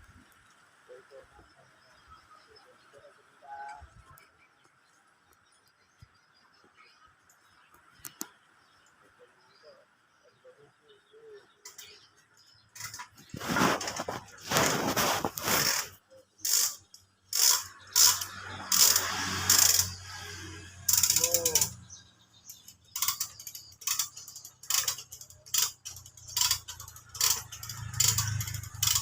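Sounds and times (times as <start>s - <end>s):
hand tools clicking and ratcheting: 12.7s - 29.0s.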